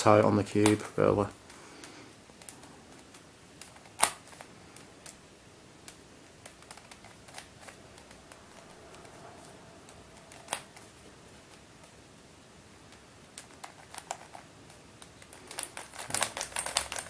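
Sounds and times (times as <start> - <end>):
plastic clicks of puzzle cube turning: 13.3 - 17.0.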